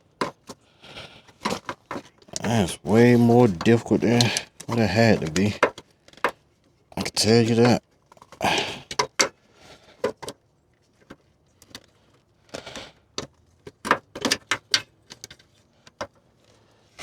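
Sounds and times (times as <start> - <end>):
clicks and rattles of small parts: 1.3 - 6.5, 10.0 - 12.6, 13.2 - 16.6.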